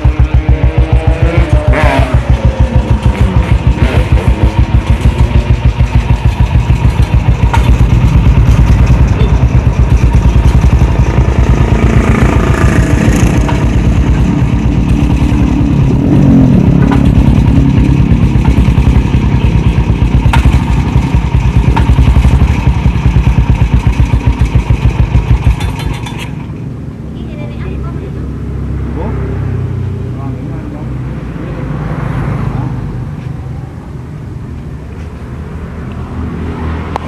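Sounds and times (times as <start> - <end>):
motorcycle engine rapid pulsing: 0.0 - 27.6.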